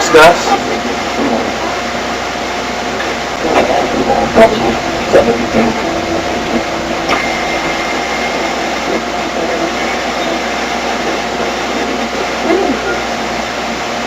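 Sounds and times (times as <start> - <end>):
radio static with faint tones: 3.2 - 8.4.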